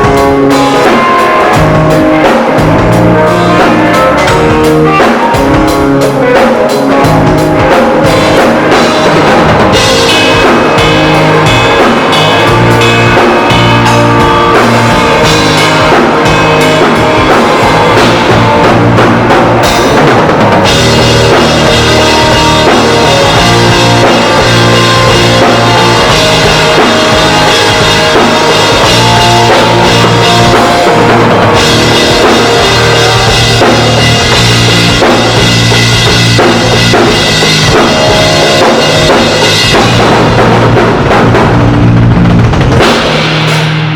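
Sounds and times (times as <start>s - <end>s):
bass drum: 0.0s - 43.9s
drum rimshots: 0.0s - 43.9s
live band playing loudly: 0.0s - 43.9s.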